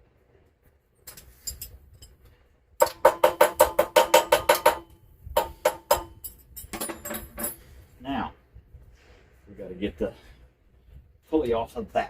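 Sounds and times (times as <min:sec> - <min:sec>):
faint metal clinks: 0:01.0 - 0:02.4, 0:06.0 - 0:07.7
rapid metal tapping: 0:02.8 - 0:06.4.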